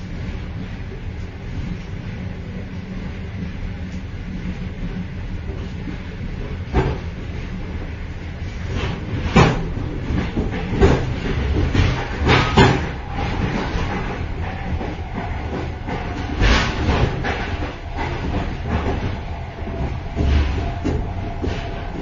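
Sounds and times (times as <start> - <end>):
train running rumble: 0.0 - 22.0
metallic clanks and rattles: 8.9 - 22.0.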